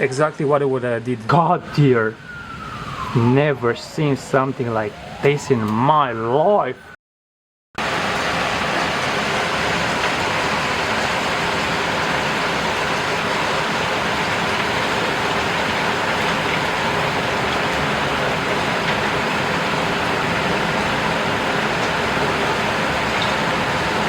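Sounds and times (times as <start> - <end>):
heavy rain pouring: 1.6 - 5.8, 7.8 - 24.0.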